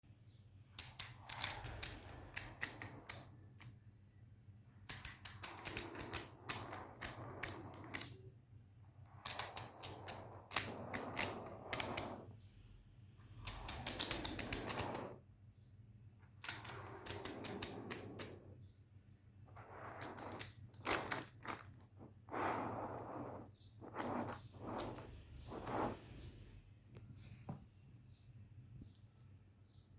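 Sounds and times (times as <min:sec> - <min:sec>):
soft rustle: 0:09.0 - 0:13.2, 0:21.8 - 0:28.2.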